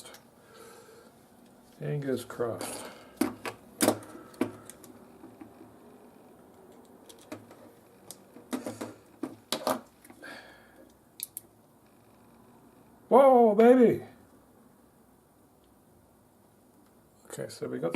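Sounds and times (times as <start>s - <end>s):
plastic parts clicking: 3.2s - 5.7s, 6.6s - 10.2s.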